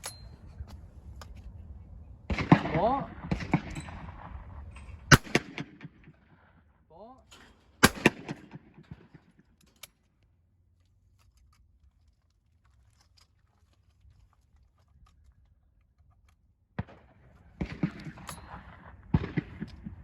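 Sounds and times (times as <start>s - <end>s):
sharp crack: 7.8s - 9.2s
gear clicking and rattling: 8.8s - 16.5s.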